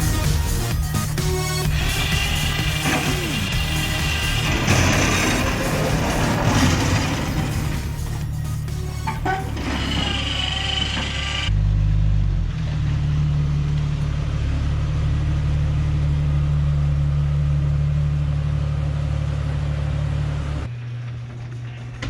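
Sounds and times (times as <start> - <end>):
car engine running: 0.0 - 11.5.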